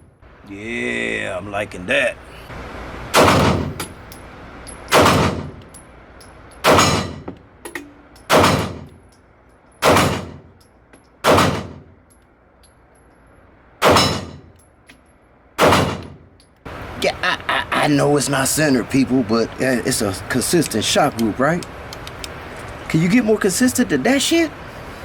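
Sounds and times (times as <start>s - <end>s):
pistol shots: 3.1s - 4.0s, 4.9s - 5.6s, 6.6s - 7.3s, 8.3s - 9.0s, 9.8s - 10.6s, 11.2s - 12.0s, 13.8s - 14.5s, 15.6s - 16.3s.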